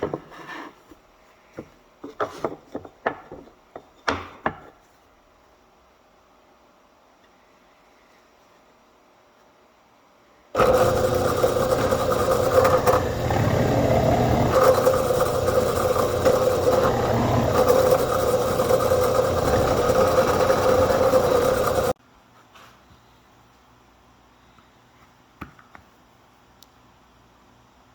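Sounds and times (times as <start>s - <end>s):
table saw running: 10.6s - 22.0s.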